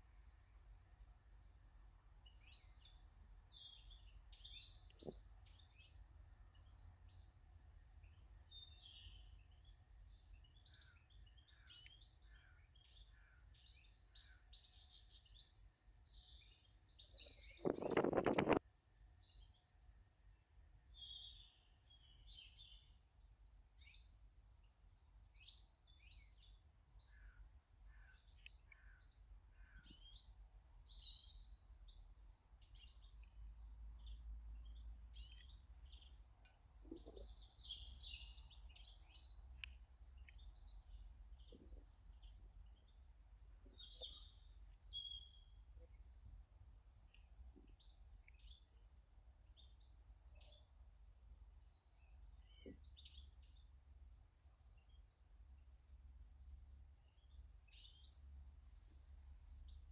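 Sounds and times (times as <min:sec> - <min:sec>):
birds chirping: 0:01.8 - 0:18.6, 0:34.0 - 0:46.2.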